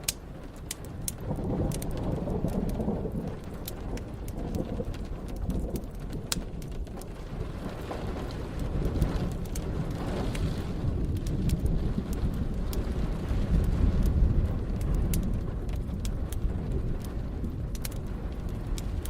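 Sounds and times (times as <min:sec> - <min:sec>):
deep rolling thunder: 0:00.0 - 0:19.0
fireplace crackling and popping: 0:00.0 - 0:19.0
steady rain: 0:00.0 - 0:19.0.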